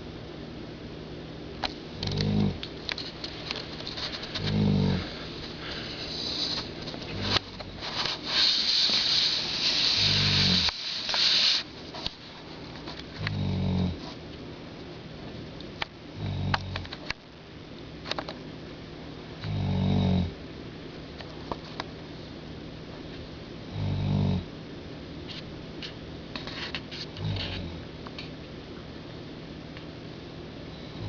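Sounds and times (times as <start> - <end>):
pet snoring: 2.0 - 11.6, 13.2 - 14.0, 16.2 - 16.9, 19.4 - 20.4, 23.7 - 24.5, 27.2 - 27.9, 30.8 - 31.0
hissy breaths: 2.0 - 12.2.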